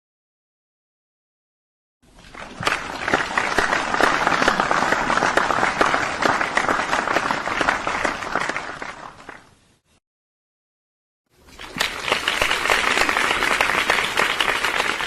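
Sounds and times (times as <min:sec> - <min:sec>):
audience applauding: 0:02.3 - 0:09.5, 0:11.5 - 0:15.0.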